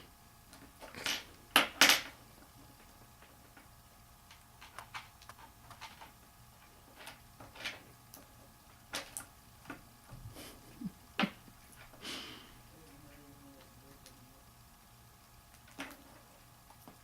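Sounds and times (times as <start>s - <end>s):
cockatiels clicking and tapping: 4.3s - 9.8s.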